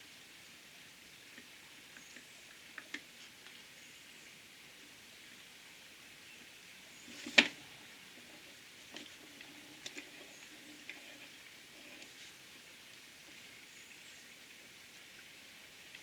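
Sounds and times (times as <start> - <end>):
light clicks and taps of small parts: 1.4 - 3.6.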